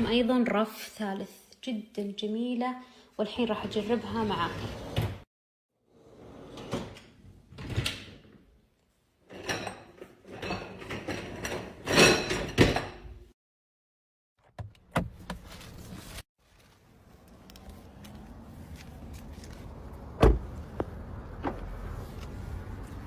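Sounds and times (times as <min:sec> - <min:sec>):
dishwasher racks clattering: 0:09.3 - 0:13.2.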